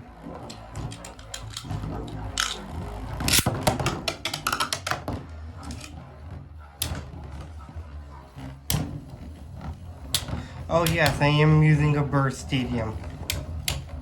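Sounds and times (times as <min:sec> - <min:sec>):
plastic toy parts clicking: 0:03.3 - 0:05.0.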